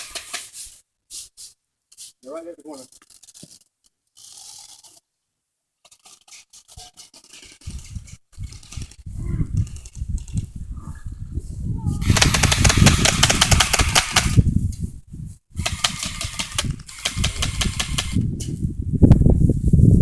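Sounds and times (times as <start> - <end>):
airsoft gun firing full auto: 0.0 - 0.6, 12.0 - 14.4, 15.6 - 18.2
low microphone rumble: 7.7 - 13.7, 16.7 - 20.0.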